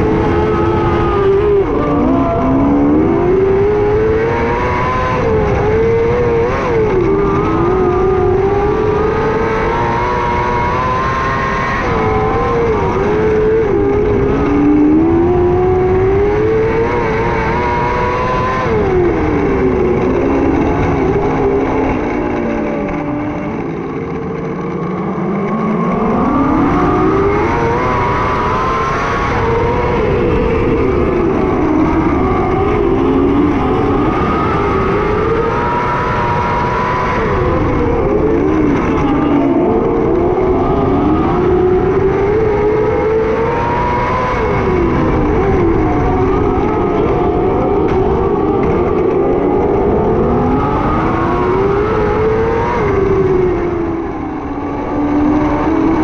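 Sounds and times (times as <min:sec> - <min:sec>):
racing engine revving: 0:00.0 - 0:56.0.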